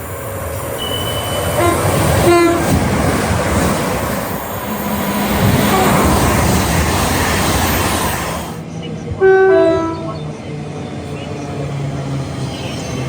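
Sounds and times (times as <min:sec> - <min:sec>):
train rumbling on rails: 0:00.0 - 0:13.0
train horn blast: 0:00.8 - 0:02.8, 0:04.7 - 0:06.1, 0:09.2 - 0:10.2.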